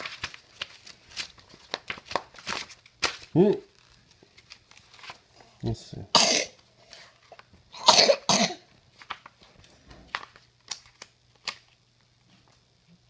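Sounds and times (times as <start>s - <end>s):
person coughing: 6.1s - 6.6s, 7.8s - 8.7s.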